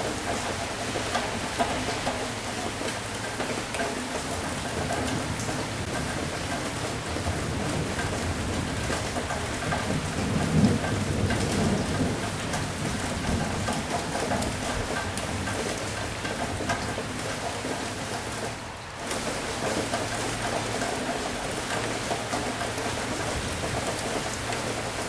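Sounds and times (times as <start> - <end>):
heavy rain pattering: 0.0 - 25.0
thunder rumbling: 5.2 - 17.0.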